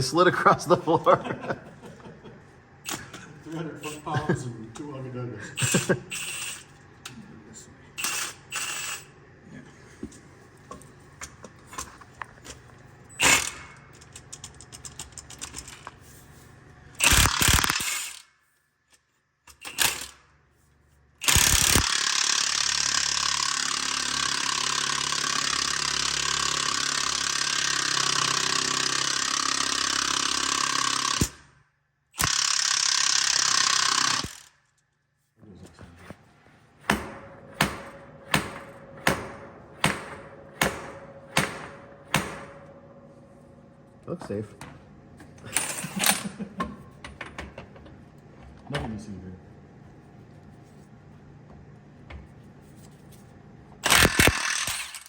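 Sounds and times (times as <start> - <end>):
power tool running: 2.8 - 4.3, 5.5 - 6.8, 8.0 - 9.2, 13.2 - 13.9, 17.0 - 18.3, 21.2 - 31.6, 32.2 - 34.6, 36.7 - 44.4, 53.8 - 55.0
ratchet wrench clicking: 6.1 - 6.7, 17.0 - 18.3, 21.2 - 25.8, 32.2 - 34.6.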